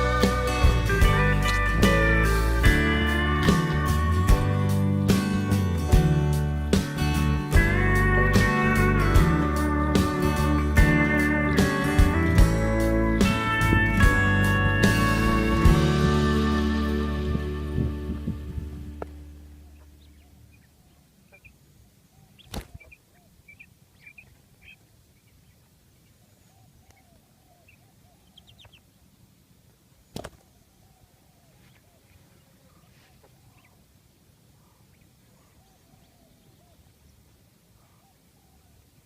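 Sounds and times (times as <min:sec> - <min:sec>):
background music: 0:00.0 - 0:19.8
small birds chirping: 0:19.0 - 0:39.0
low repeated bird calls: 0:19.2 - 0:39.0.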